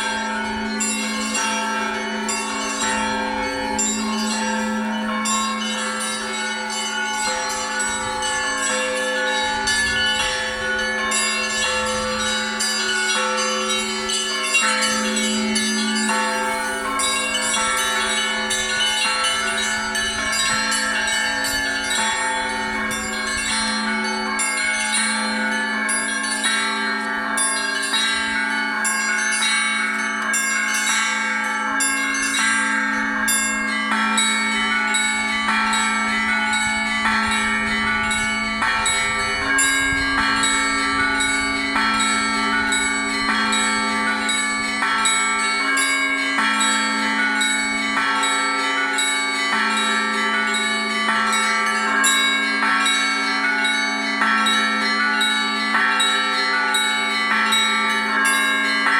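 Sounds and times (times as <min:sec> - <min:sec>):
large low bell humming: 0:00.0 - 0:27.5
small church bells pealing: 0:00.0 - 0:58.9.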